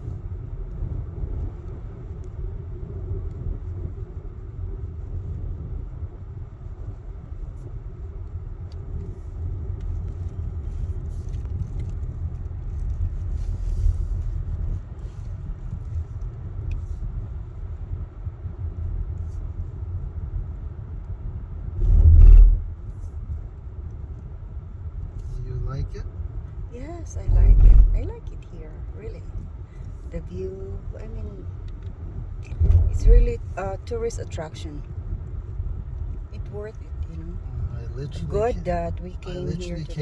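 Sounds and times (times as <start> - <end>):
uneven low rumble: 0.0 - 40.0
low thump: 21.8 - 22.7, 27.2 - 28.1.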